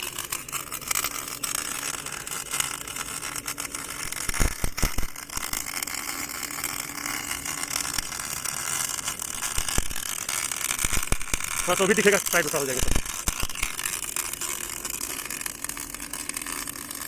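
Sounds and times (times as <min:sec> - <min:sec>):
line boring machine humming: 0:00.0 - 0:17.0.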